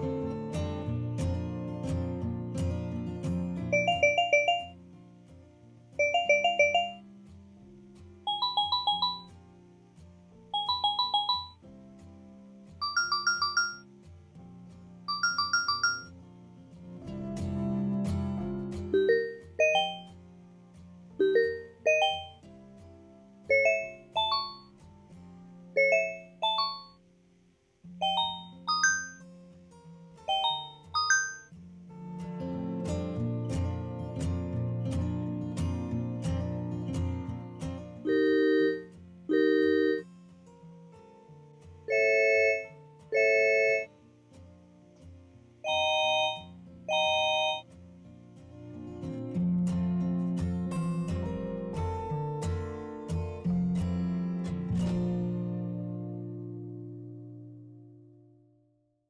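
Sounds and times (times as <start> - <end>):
strummed guitar tune: 0.0 - 26.8, 27.8 - 58.3
two-note beeping trills: 3.8 - 4.7, 6.0 - 7.0, 8.3 - 9.3, 10.6 - 11.6, 12.8 - 13.8, 15.1 - 16.1, 19.0 - 20.1, 21.2 - 22.4, 23.5 - 24.7, 25.8 - 27.0, 28.0 - 29.2, 30.3 - 31.5, 38.1 - 40.0, 41.9 - 43.9, 45.7 - 47.6
background music: 28.0 - 29.2.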